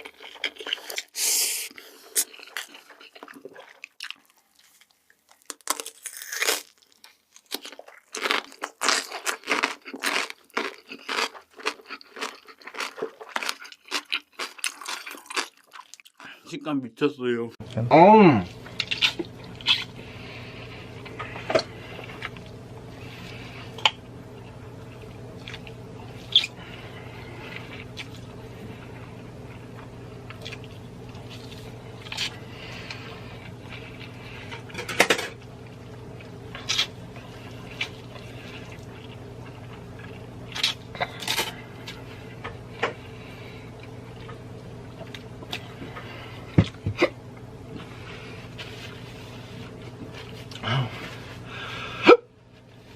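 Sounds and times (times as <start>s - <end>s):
chewing and mouth noises: 0.0s - 16.4s, 18.5s - 34.7s
steady low hum: 16.9s - 52.9s.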